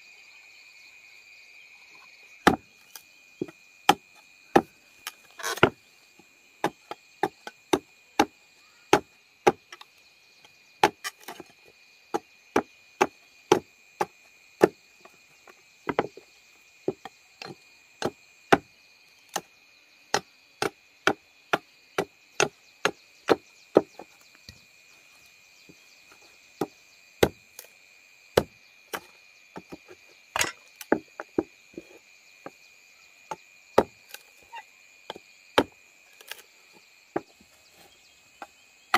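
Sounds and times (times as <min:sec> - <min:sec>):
blade chopping wood: 0:02.4 - 0:05.8, 0:06.6 - 0:09.9, 0:10.8 - 0:14.8, 0:15.8 - 0:16.2, 0:16.9 - 0:18.7, 0:20.1 - 0:24.6, 0:28.4 - 0:31.5, 0:33.8 - 0:34.2, 0:35.1 - 0:36.4.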